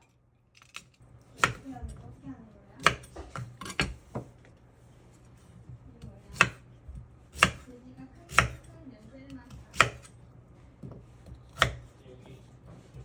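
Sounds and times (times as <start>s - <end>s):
knife chopping on cutting board: 1.4s - 2.0s, 2.8s - 4.4s, 5.3s - 13.0s.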